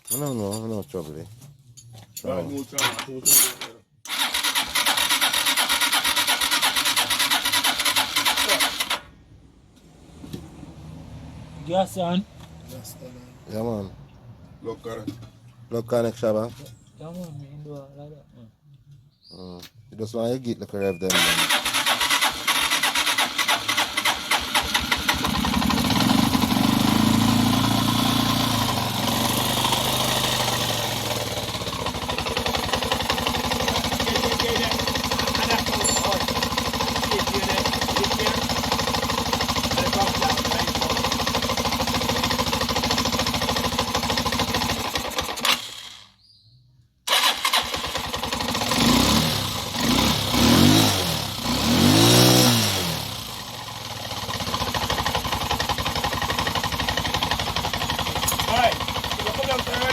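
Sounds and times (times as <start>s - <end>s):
motorcycle engine running and revving: 21.1s - 45.4s, 47.6s - 59.9s.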